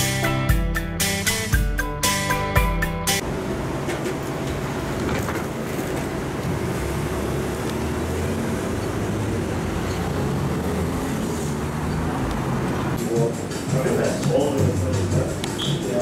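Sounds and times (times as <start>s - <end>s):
vehicle engine rumble: 3.2s - 13.1s.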